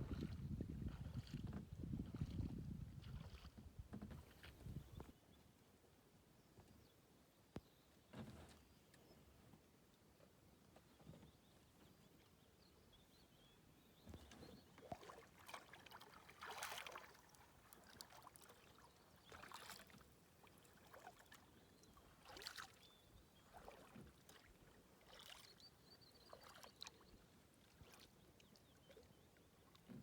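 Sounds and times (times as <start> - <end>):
kayak paddle splashing: 0.0 - 4.7, 14.2 - 29.1.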